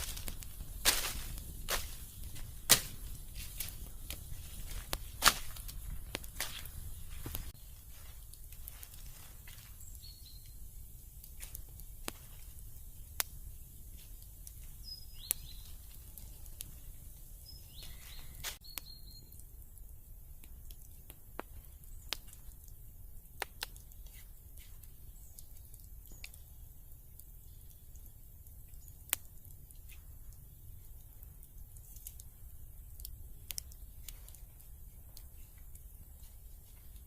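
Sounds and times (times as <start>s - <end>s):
high bird chirps: 9.8s - 10.6s, 14.8s - 15.8s, 17.4s - 19.4s.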